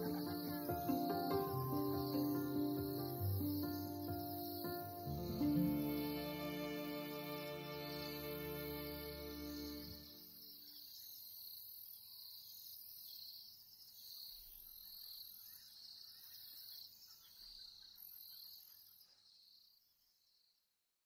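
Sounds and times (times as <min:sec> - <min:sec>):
insects chirring: 0:00.0 - 0:11.7.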